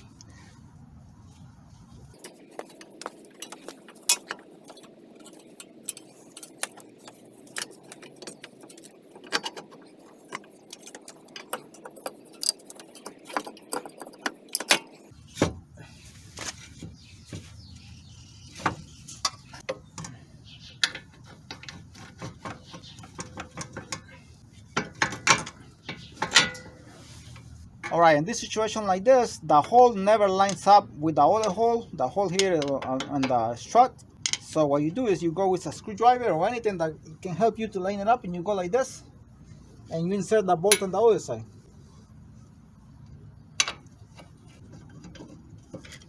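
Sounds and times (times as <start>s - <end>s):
metallic clinks of tools and parts: 2.2s - 15.1s.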